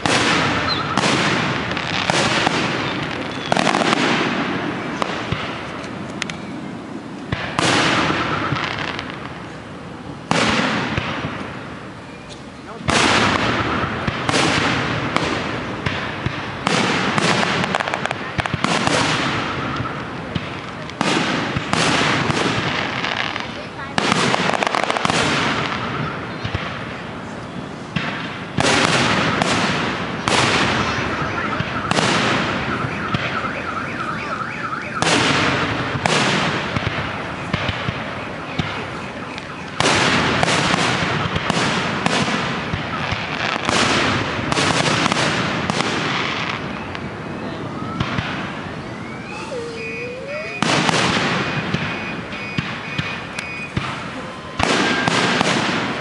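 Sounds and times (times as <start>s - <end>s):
rising firework whistle: 0.0s - 4.1s, 7.6s - 9.1s, 30.3s - 35.7s, 46.4s - 55.5s
fireworks booms: 0.0s - 6.3s, 7.2s - 9.6s, 10.2s - 11.8s, 12.7s - 27.3s, 27.9s - 56.0s
fireworks crackle: 0.0s - 34.4s, 35.0s - 56.0s
steady high tones: 48.8s - 52.6s
high pulsing tone: 49.0s - 50.8s.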